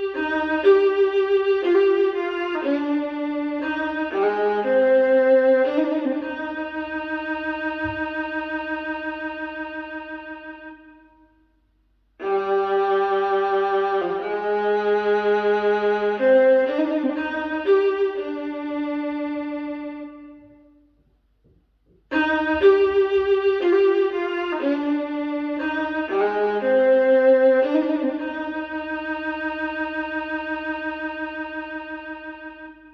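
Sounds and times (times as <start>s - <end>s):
violin led string music: 0.0s - 11.4s, 12.2s - 21.0s, 22.0s - 32.9s.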